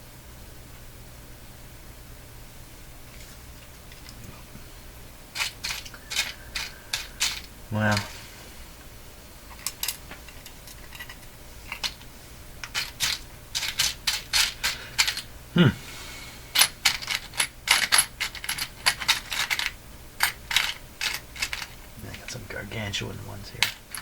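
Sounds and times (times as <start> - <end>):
metal washers clinking: 5.4 - 8.2, 9.5 - 15.3, 16.5 - 22.5, 23.5 - 24.0.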